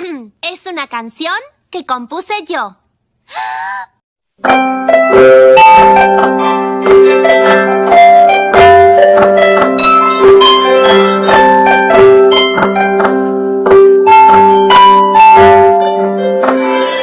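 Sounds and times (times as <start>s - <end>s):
phone alarm harp-like melody: 4.5s - 13.0s.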